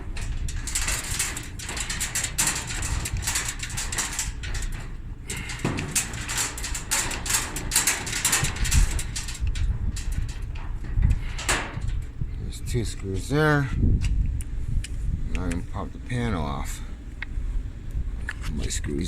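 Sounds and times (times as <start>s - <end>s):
metallic clicking and rattling: 0.0s - 14.5s.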